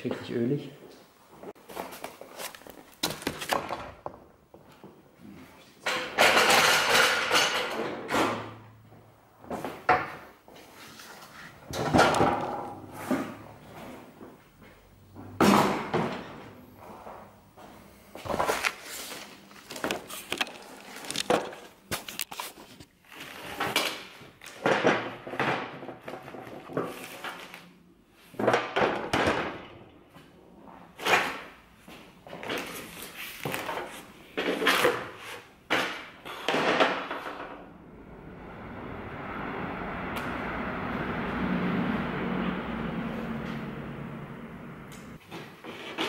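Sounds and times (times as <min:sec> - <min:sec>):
tools and parts clunking: 0:05.8 - 0:08.6
steady noise: 0:37.4 - 0:45.2.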